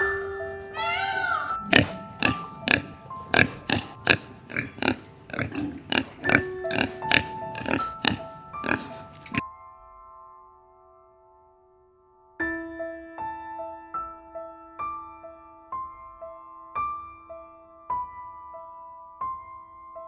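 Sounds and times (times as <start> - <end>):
background keyboard music: 0.0 - 20.0
animal drawn-out call: 1.0 - 9.4
animal grunting calls: 1.2 - 9.4.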